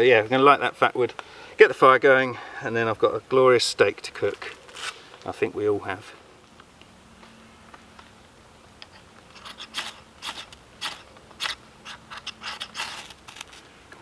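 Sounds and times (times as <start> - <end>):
sharp scraping strokes on wood: 8.9 - 13.7.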